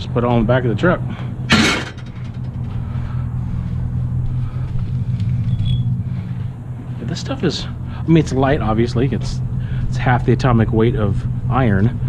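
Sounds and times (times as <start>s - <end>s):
steady low rumble: 0.0s - 12.0s
scrap metal crashing onto truck bed: 1.5s - 2.7s
metal rattles: 1.5s - 2.8s.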